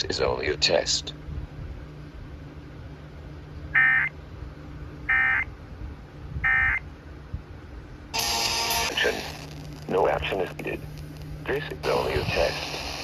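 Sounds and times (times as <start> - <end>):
faint steady hum: 0.0 - 13.0
buzzing data bursts: 8.2 - 13.0.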